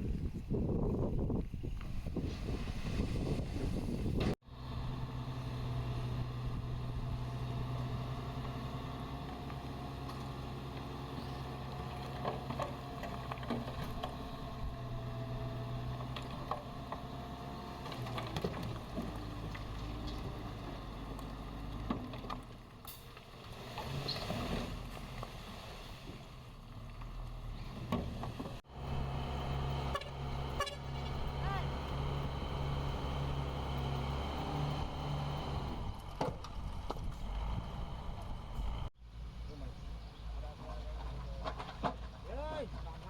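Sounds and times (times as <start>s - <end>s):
diesel engine running: 4.4s - 22.8s, 27.2s - 39.7s.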